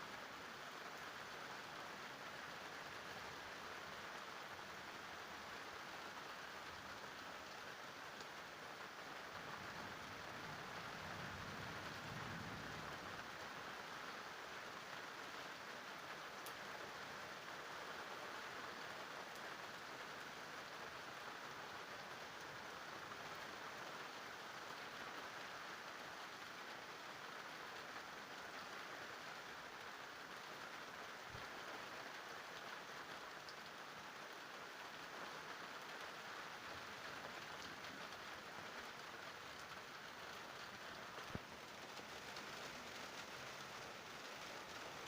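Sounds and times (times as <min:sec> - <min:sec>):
rain falling: 0:00.0 - 0:45.0.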